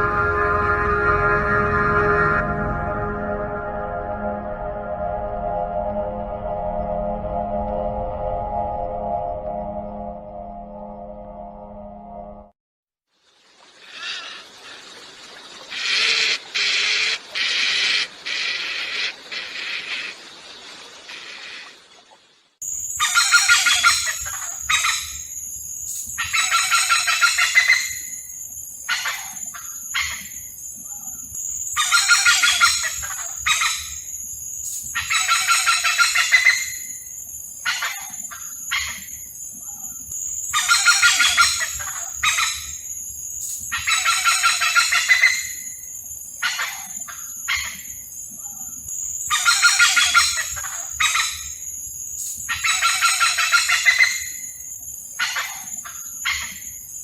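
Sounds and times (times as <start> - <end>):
hornbills calling: 15.7 - 20.3, 40.6 - 42.7, 43.7 - 45.6, 49.3 - 51.5, 52.5 - 54.4.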